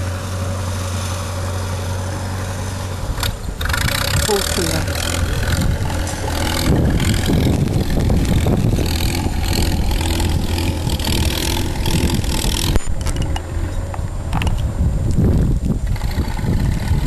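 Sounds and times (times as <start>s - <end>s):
engine running: 0.0s - 17.0s
wind buffeting microphone: 0.0s - 17.0s.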